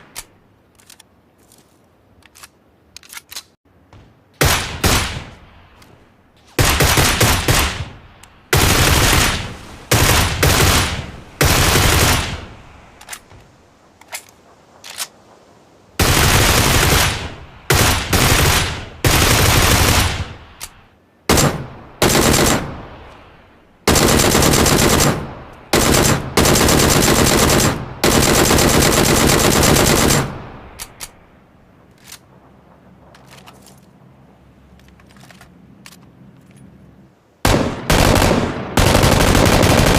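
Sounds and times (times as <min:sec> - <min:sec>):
single gunshots: 0:04.4 - 0:05.5
automatic gunfire bursts: 0:06.6 - 0:07.9, 0:08.6 - 0:12.5, 0:16.0 - 0:20.3, 0:21.3 - 0:22.8, 0:23.9 - 0:30.4, 0:37.5 - 0:39.9.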